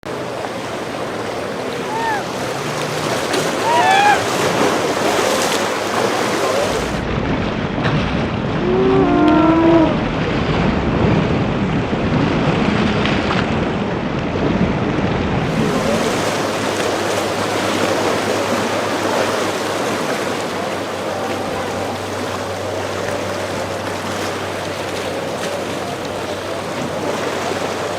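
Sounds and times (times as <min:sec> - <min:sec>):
surf and rushing water: 0:00.0 - 0:27.9
wind buffeting microphone: 0:00.1 - 0:27.9
person shouting: 0:01.9 - 0:02.3, 0:03.6 - 0:04.4, 0:08.6 - 0:10.0.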